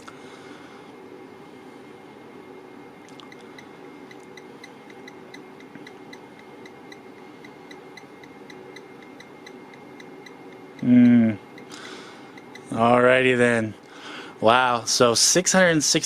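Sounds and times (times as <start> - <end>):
steady background noise: 0.0 - 16.0
rapid even ticking: 3.3 - 10.9, 11.5 - 12.8.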